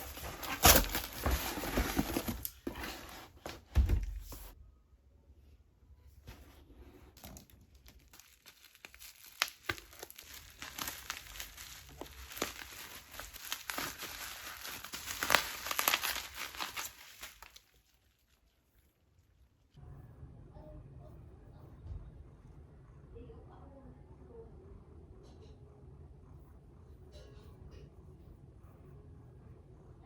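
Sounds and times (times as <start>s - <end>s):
material crinkling and rustling: 0.0s - 4.6s, 6.3s - 19.7s.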